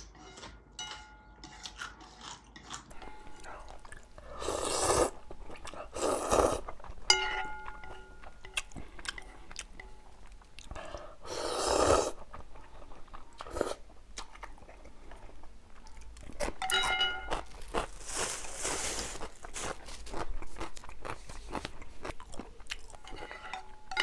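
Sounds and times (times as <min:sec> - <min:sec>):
chewing and biting food: 0:17.3 - 0:18.4, 0:19.2 - 0:23.4.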